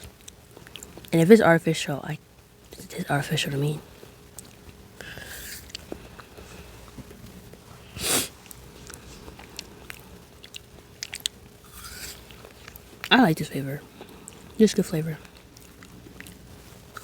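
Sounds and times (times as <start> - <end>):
loud burst of breath: 7.9 - 8.4
mouth clicks and smacks: 8.8 - 12.8.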